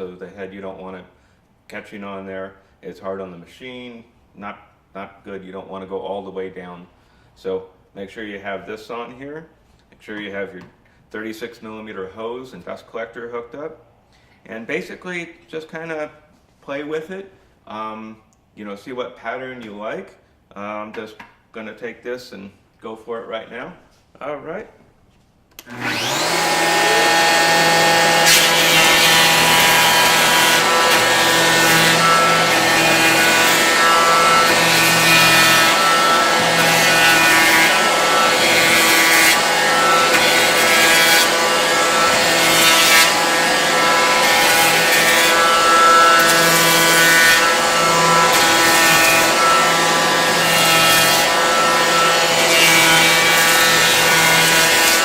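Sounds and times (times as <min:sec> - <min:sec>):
electric planer cutting wood: 0:25.6 - 0:55.0.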